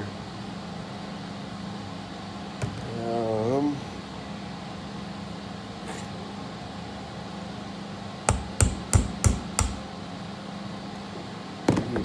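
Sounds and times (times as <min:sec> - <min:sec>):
steady low hum: 0:00.0 - 0:12.0
hammer tapping a metal punch: 0:08.3 - 0:09.9.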